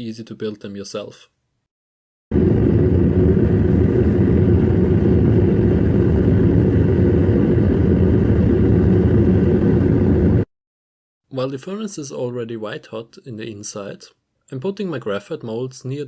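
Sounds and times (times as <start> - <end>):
propane burner roaring: 2.3 - 10.5.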